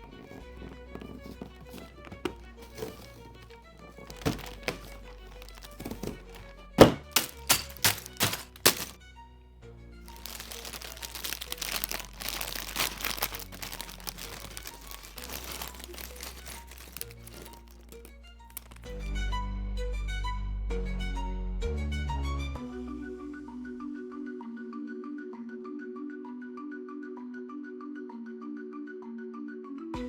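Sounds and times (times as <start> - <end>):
plastic bags crinkling: 0.0 - 9.0, 10.1 - 18.9
background music: 0.0 - 30.0.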